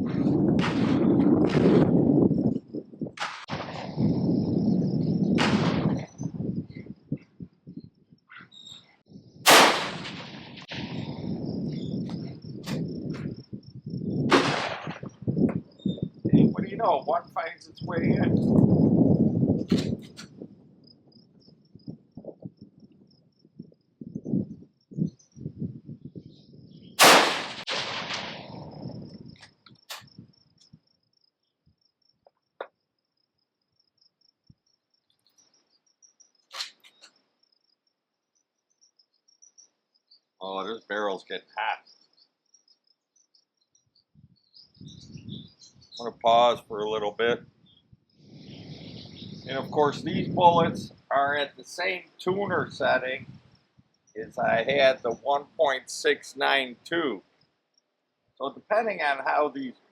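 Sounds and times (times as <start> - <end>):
insects chirping: 0.0 - 59.9
rifle shots with echo: 5.4 - 6.1, 9.5 - 11.1, 14.3 - 15.1, 27.0 - 28.8.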